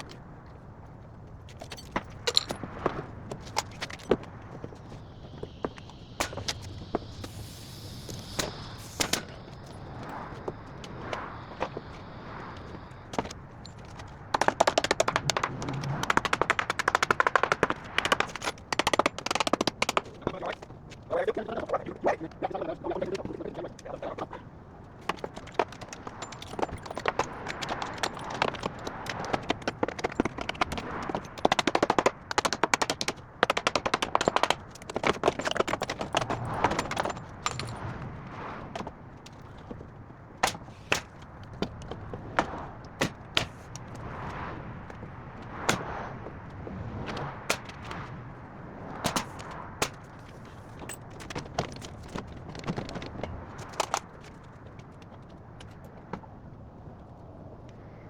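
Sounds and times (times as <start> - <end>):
construction tool knocking: 14.3 - 20.6, 25.1 - 37.8.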